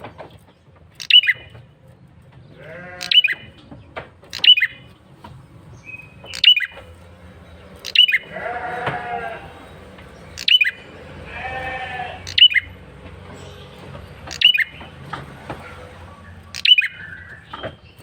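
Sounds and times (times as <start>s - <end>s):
bird buzzy rasping call: 2.6s - 3.6s, 5.8s - 13.6s, 14.2s - 17.6s
bird sharp downward chirp: 5.8s - 6.8s, 7.8s - 8.3s, 10.4s - 10.9s, 12.2s - 12.7s, 14.3s - 14.7s, 16.5s - 17.4s.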